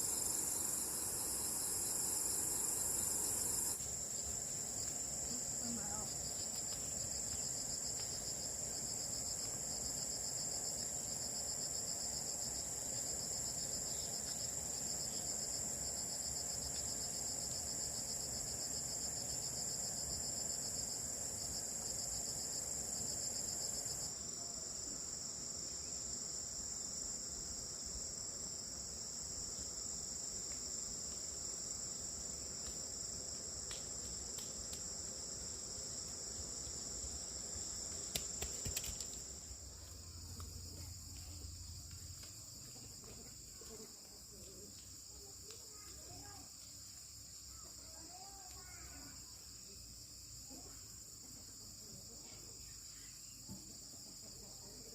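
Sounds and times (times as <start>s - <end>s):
insects chirping with pulsing trill: 0.0s - 54.9s.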